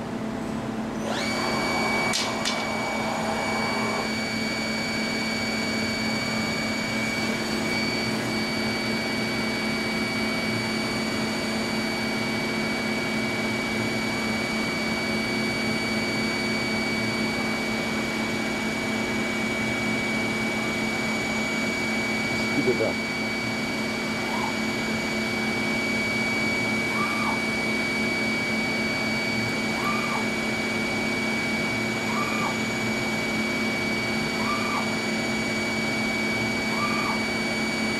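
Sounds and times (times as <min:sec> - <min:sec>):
machine spindle whine: 0:00.0 - 0:37.9.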